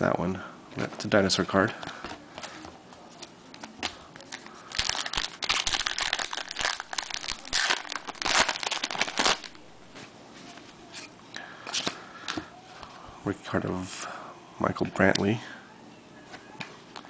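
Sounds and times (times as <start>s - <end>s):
wrapper crinkling and tearing: 3.6s - 9.6s.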